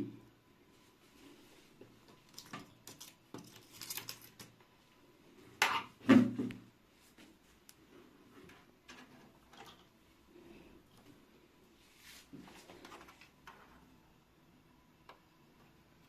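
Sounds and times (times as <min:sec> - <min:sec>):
small clicks and knocks of tools: 0:02.1 - 0:04.6
tools clattering scrape: 0:02.3 - 0:04.5.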